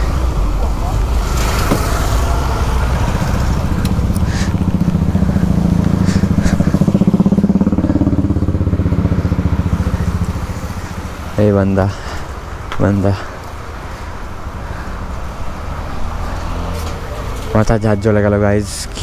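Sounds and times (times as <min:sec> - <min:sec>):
motorcycle engine running: 0:00.0 - 0:12.6.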